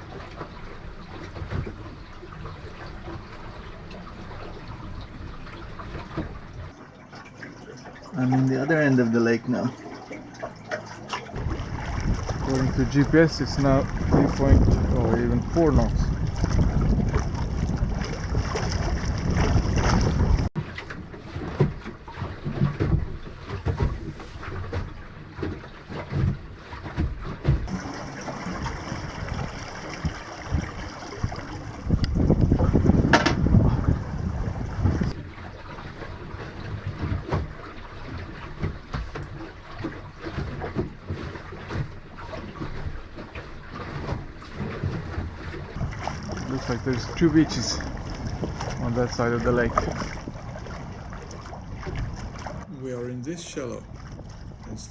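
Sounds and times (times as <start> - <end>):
water rushing along hull: 0.0 - 54.9
water splashing and lapping: 0.0 - 54.9
wind buffeting microphone: 6.2 - 20.5, 27.5 - 35.2, 44.8 - 52.7, 53.3 - 54.9
low rumble: 6.6 - 20.6, 27.7 - 35.2, 45.8 - 54.9.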